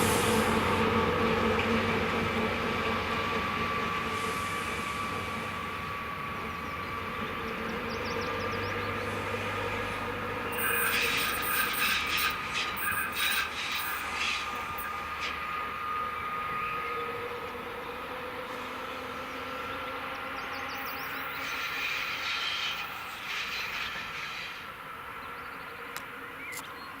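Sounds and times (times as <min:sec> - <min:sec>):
train wheels on rails: 0:00.0 - 0:26.9
faint wheel squeal: 0:10.5 - 0:17.4, 0:20.7 - 0:24.8.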